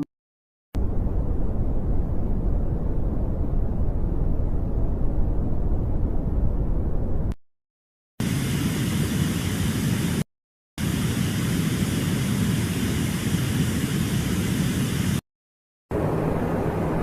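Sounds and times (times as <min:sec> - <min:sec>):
steady rumbling noise: 0:00.8 - 0:07.4, 0:15.9 - 0:17.0.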